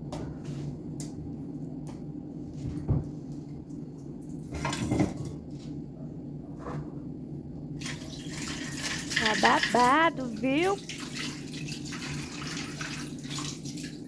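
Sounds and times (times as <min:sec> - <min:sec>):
dishes and cutlery clattering: 0:04.5 - 0:05.4
tap water running: 0:07.8 - 0:14.0.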